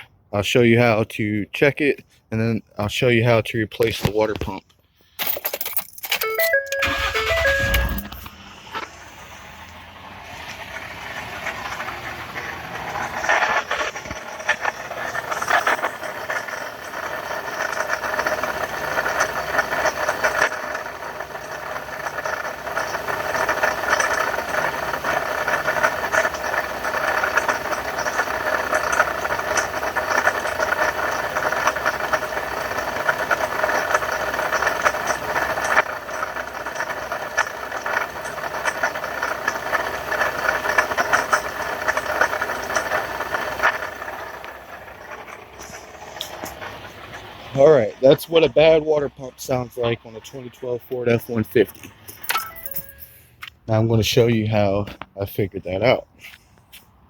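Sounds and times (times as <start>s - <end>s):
truck engine idling: 5.9s - 53.6s
pulleys rattling: 10.6s - 48.8s.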